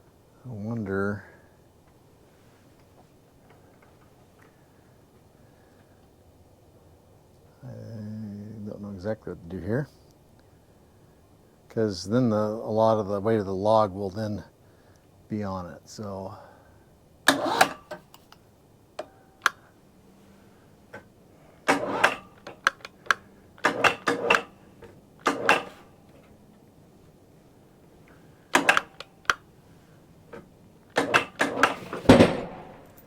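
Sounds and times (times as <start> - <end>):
log clanking on sawmill bed: 20.9 - 26.4, 28.5 - 29.3, 30.3 - 33.0.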